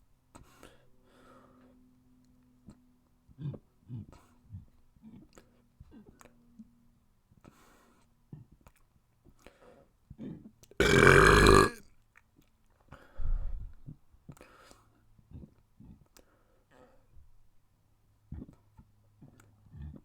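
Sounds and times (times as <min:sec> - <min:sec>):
mouth clicks: 0:10.8 - 0:11.8
person burping: 0:10.8 - 0:11.8.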